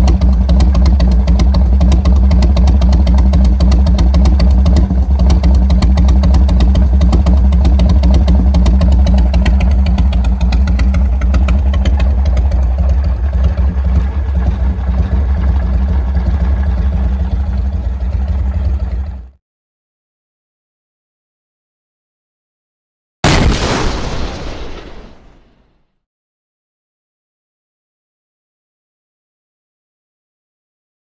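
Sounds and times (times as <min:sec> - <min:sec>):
motorcycle engine idling: 0:00.0 - 0:19.3.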